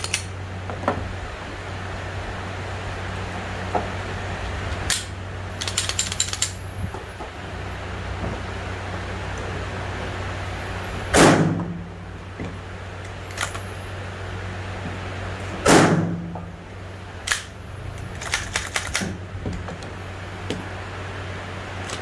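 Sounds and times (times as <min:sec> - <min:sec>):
steady low hum: 0:00.0 - 0:22.0
loud gunshots: 0:11.1 - 0:11.8, 0:15.6 - 0:16.4.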